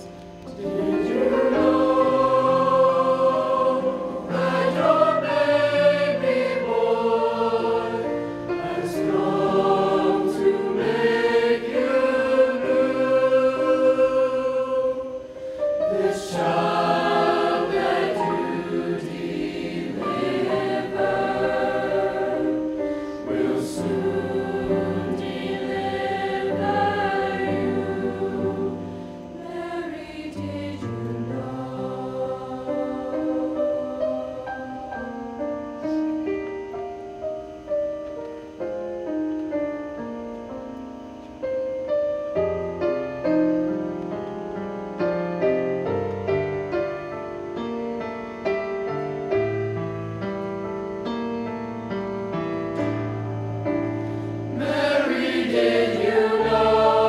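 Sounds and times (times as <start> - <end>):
choir singing: 0.0 - 36.0, 53.7 - 57.0.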